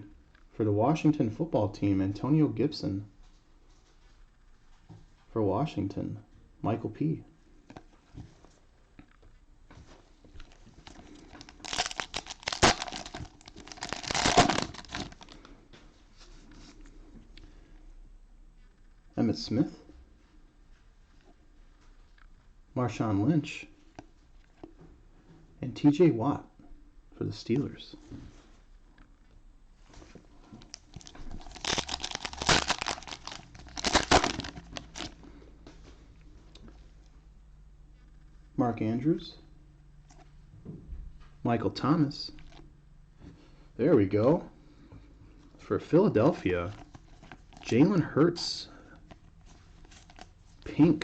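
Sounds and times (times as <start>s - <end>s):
cellophane wrapper crinkling and tearing: 10.4s - 15.4s, 30.6s - 35.2s, 42.4s - 42.6s, 46.4s - 47.9s, 49.0s - 50.6s.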